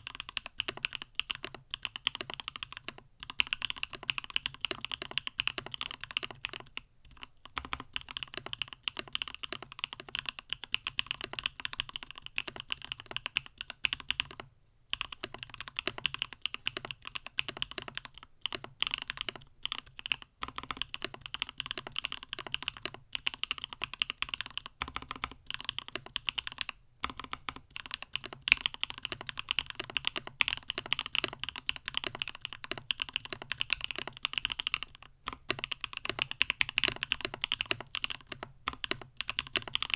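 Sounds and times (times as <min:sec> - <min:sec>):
typing on mechanical keyboard: 0:00.0 - 0:39.9.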